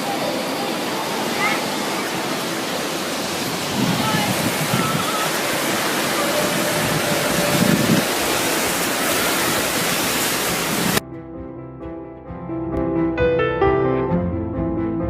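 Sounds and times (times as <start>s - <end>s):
ocean waves breaking: 0.0s - 11.0s
soft piano and string music: 9.1s - 15.0s.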